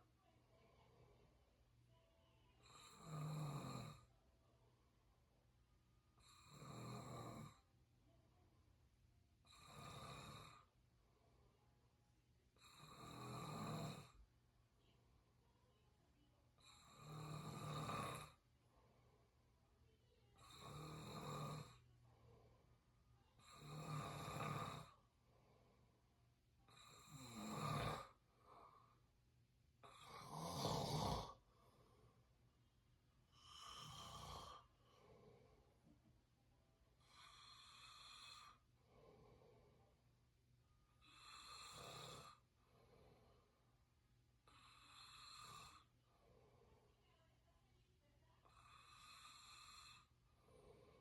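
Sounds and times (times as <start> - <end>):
person snoring raspily: 16.8 - 18.4, 23.6 - 25.0, 26.8 - 28.1, 29.9 - 31.4, 33.4 - 34.6, 41.1 - 42.4
soft breaths: 18.3 - 23.7, 24.4 - 27.1, 27.8 - 47.6, 48.4 - 51.0.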